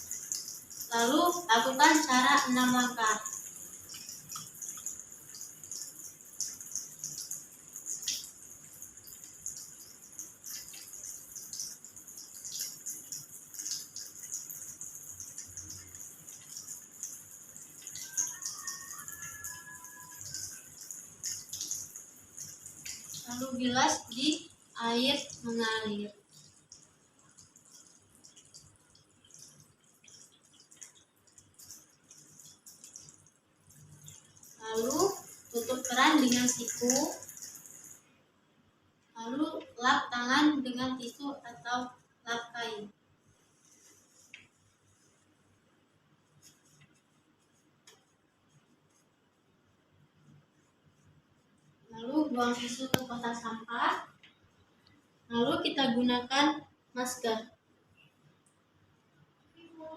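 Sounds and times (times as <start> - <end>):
water drips: 0.0 - 38.1, 43.3 - 45.3, 50.0 - 55.6.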